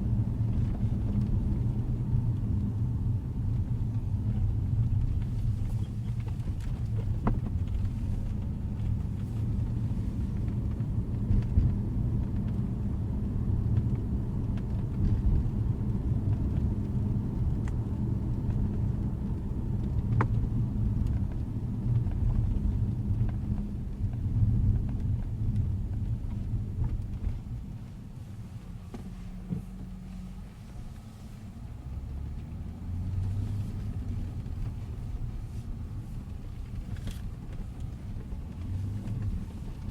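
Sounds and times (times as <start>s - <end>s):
car low rumble: 0.0s - 39.9s.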